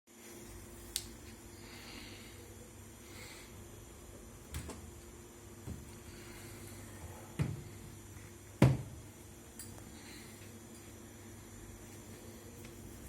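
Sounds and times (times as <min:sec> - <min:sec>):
appliance electrical hum: 0:00.1 - 0:13.0.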